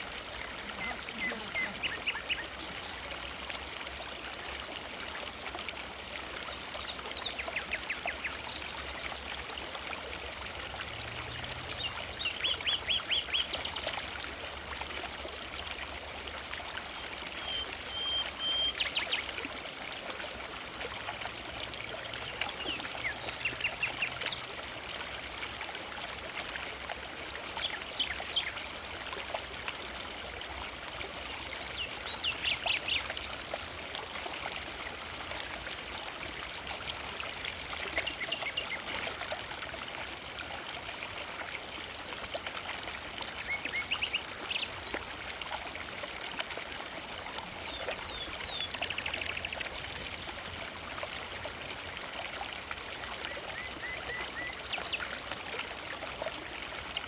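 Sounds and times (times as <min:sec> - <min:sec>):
birds chirping: 0:00.6 - 0:03.4.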